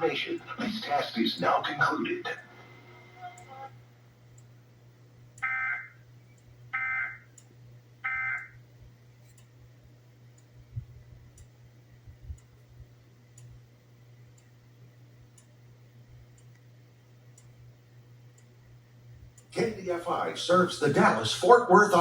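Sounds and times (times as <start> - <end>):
low hum: 0.0 - 22.0
faint ticks: 16.3 - 16.7.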